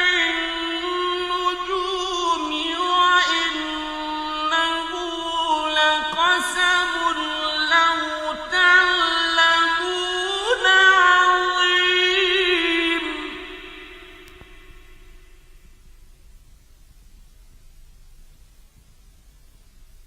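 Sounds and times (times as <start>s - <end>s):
person chanting melodically: 0.0s - 15.4s.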